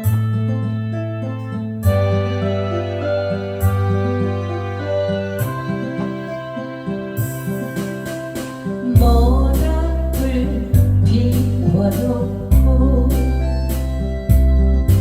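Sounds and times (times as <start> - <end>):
soft keyboard accompaniment: 0.0 - 15.0
heavy bass: 1.8 - 15.0
person singing with vibrato: 7.2 - 13.8.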